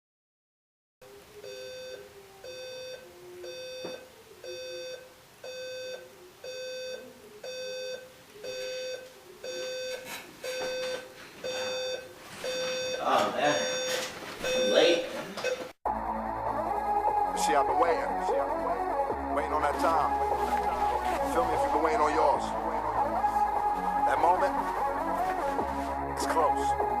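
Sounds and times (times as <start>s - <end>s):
electronic alarm clock beeping: 1.4s - 15.7s.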